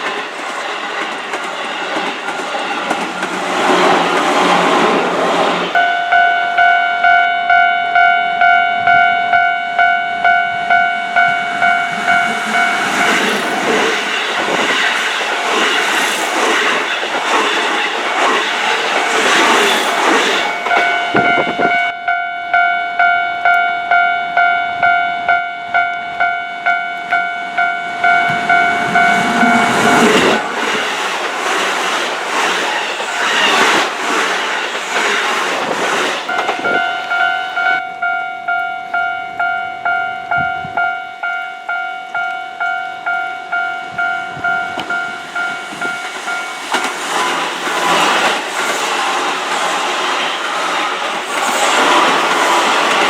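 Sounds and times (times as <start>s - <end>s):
train wheels rushing on rails: 0.0s - 5.8s, 11.0s - 21.9s, 28.0s - 37.8s, 43.8s - 53.0s
level crossing bell dinging: 5.8s - 13.3s, 20.6s - 30.4s, 36.3s - 46.6s.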